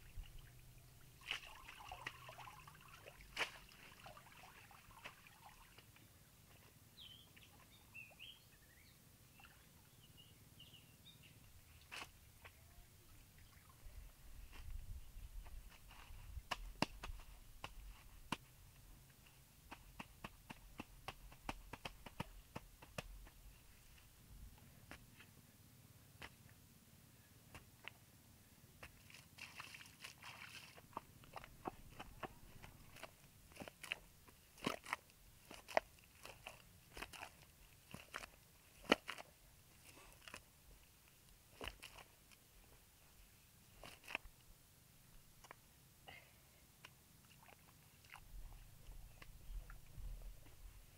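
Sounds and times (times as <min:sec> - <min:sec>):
faint low rumble: 0:11.2 - 0:28.9, 0:48.2 - 0:50.9.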